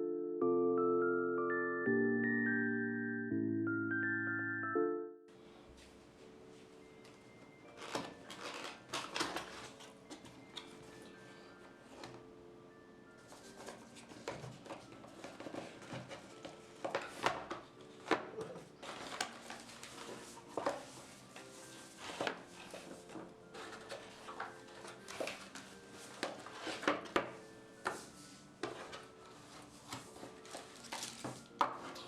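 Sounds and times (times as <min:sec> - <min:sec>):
faint background music: 0:04.8 - 0:32.0
keyboard packaging knocks and clicks: 0:07.7 - 0:10.8, 0:13.6 - 0:20.9, 0:22.1 - 0:28.0.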